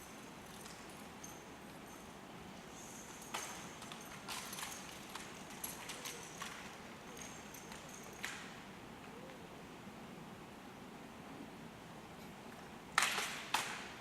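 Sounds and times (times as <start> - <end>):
rifles and boots clacking: 2.7 - 8.5.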